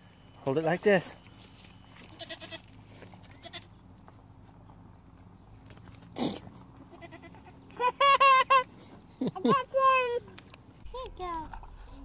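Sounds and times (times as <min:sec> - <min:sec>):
animal bleating: 0:02.0 - 0:03.8, 0:06.2 - 0:07.6.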